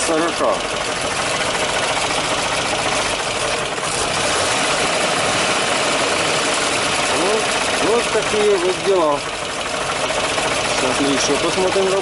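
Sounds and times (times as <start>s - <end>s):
truck engine idling: 0.0s - 12.0s.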